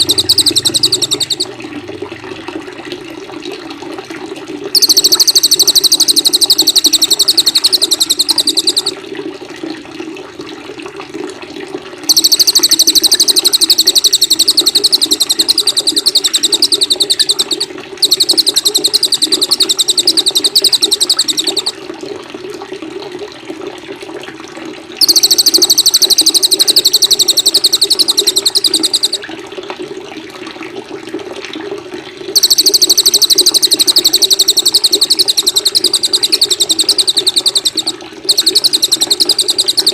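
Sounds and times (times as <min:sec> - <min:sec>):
songbird trilling: 0:00.0 - 0:01.5, 0:04.8 - 0:09.0, 0:12.1 - 0:21.8, 0:25.0 - 0:29.2, 0:32.4 - 0:39.9
running water: 0:00.0 - 0:23.2, 0:25.0 - 0:29.9, 0:31.1 - 0:39.9.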